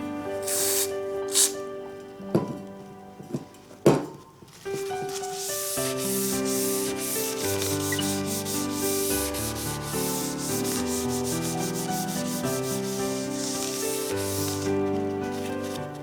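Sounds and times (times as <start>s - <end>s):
background music: 0.0s - 16.0s
rubbing strokes on hard surface: 4.7s - 16.0s.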